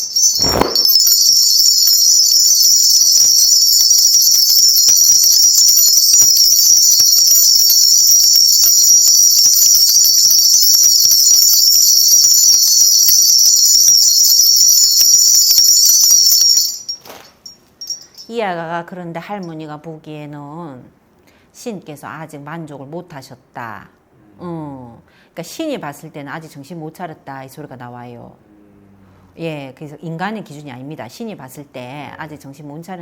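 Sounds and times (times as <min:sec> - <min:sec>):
small bells jingling: 0:00.0 - 0:18.5.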